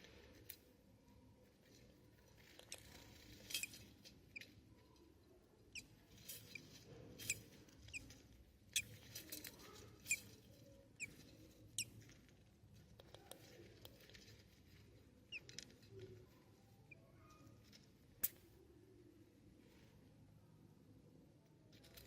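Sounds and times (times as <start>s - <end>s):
baby budgerigars peeping: 5.7s - 9.0s, 10.0s - 10.4s, 11.0s - 12.0s, 15.2s - 15.6s.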